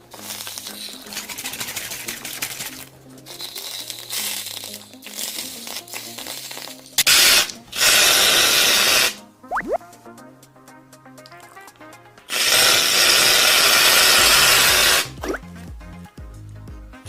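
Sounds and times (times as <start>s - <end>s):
background music: 0.0s - 17.0s
scratchy crackling with clicks: 0.1s - 7.7s
loud bursts of hiss: 7.0s - 9.2s, 12.3s - 15.2s.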